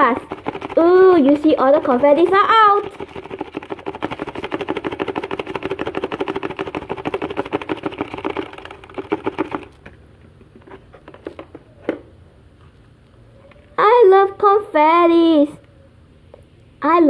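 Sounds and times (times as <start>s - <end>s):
toy package rattling: 0.1s - 9.9s.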